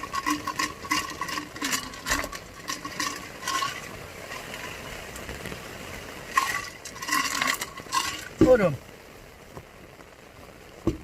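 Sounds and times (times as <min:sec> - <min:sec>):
ice clinking against metal pot: 0:00.0 - 0:04.7, 0:06.3 - 0:08.3.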